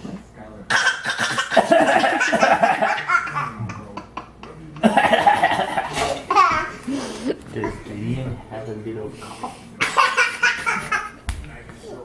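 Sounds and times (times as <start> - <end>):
laughter: 1.6 - 4.0, 4.8 - 7.4.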